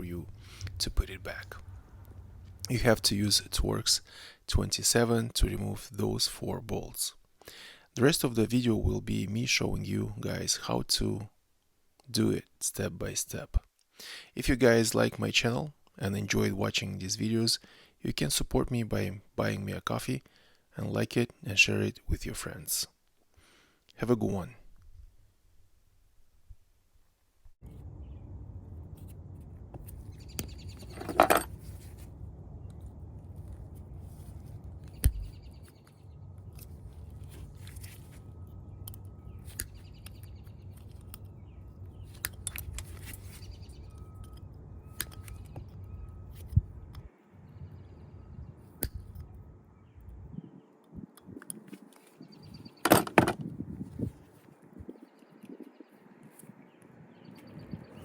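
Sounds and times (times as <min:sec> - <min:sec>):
steady low rumble: 0:00.0 - 0:03.1, 0:27.6 - 0:51.2.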